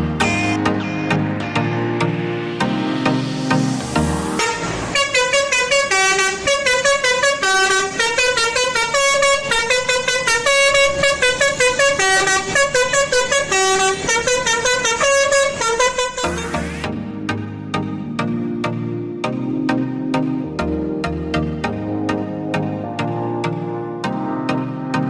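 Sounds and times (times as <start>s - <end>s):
musical bus air horn melody: 0.0s - 16.9s.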